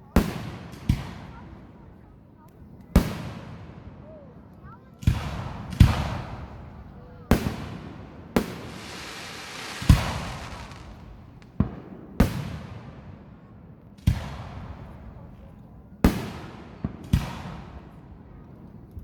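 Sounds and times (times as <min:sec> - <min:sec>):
fireworks bangs: 0:05.2 - 0:12.6
firework hiss: 0:08.4 - 0:11.6.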